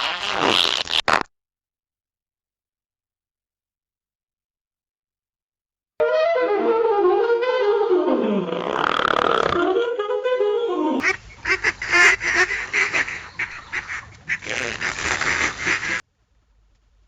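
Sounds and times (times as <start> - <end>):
long sputtering fart: 0.0 - 1.3, 8.3 - 9.7, 14.4 - 15.4
squeaky fart sound effect: 0.0 - 1.3, 8.1 - 9.8, 14.4 - 15.4.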